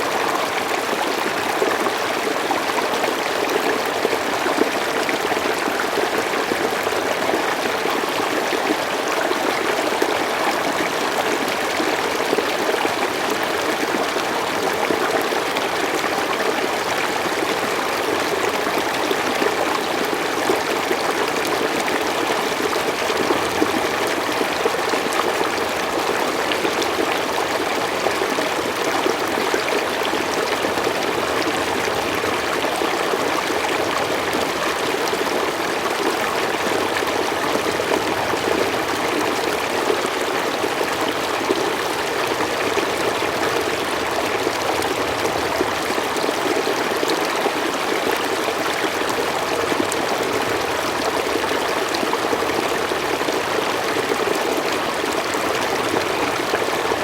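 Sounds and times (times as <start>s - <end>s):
stream flowing over rocks: 0.0s - 57.0s.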